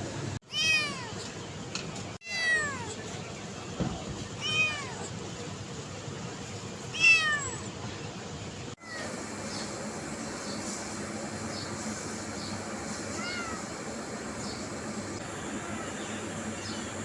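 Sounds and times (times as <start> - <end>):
cat meowing: 0.5 - 1.2, 2.2 - 3.0, 4.4 - 5.1, 6.9 - 7.7, 13.1 - 13.7.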